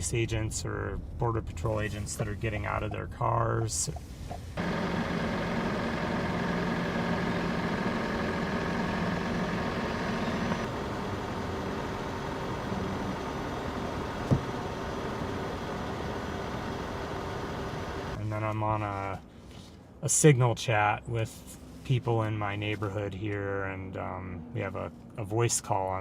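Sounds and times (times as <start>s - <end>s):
vehicle engine hum: 0.0s - 20.0s
road noise: 3.7s - 20.0s.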